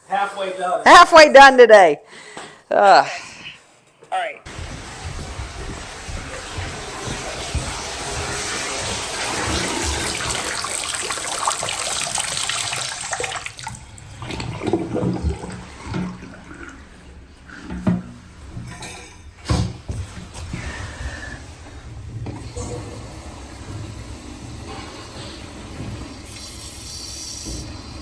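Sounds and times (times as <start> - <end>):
water rushing: 4.5 - 18.7
knocks and clunks: 17.5 - 21.0.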